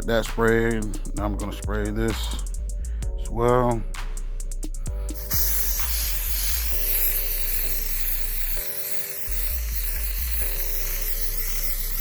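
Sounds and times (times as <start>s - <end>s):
background music with held chords: 0.0s - 12.0s
aerosol spray hissing: 5.1s - 12.0s.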